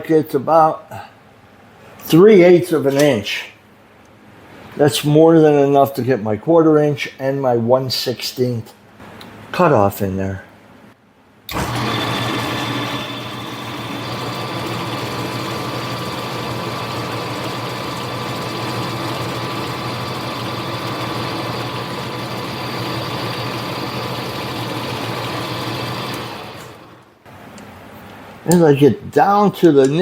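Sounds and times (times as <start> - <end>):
lathe motor whine: 11.5 - 27.1.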